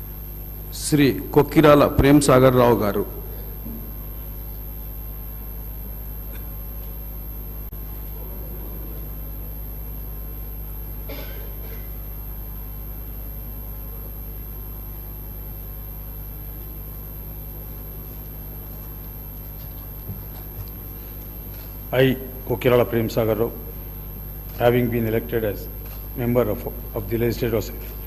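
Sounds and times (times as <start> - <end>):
low electrical hum: 0.0 - 28.0.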